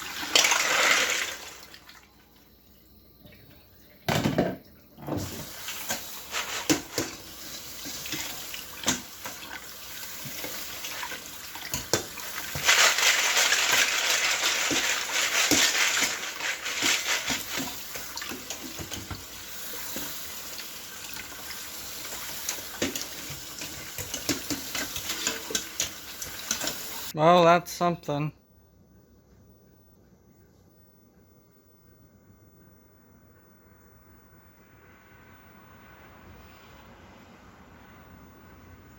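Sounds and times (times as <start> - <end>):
tap water running into sink: 4.0 - 12.7, 13.4 - 27.1.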